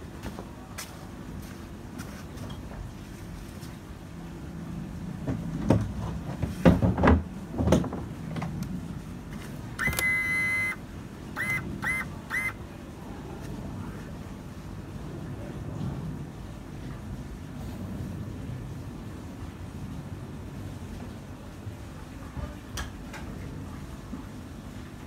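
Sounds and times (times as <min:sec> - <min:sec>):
electronic beeps: 0:09.8 - 0:10.8, 0:11.4 - 0:12.6.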